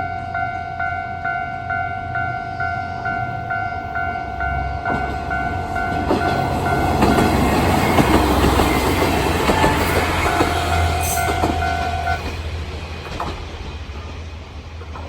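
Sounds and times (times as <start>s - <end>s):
train wheels clacking: 4.4s - 15.0s.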